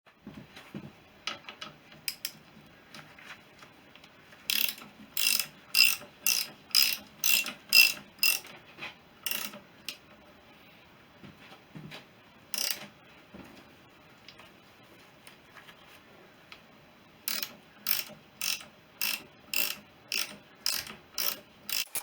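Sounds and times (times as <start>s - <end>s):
socket ratchet clicking: 4.5s - 8.4s, 9.3s - 9.6s, 12.6s - 12.8s, 17.3s - 22.0s.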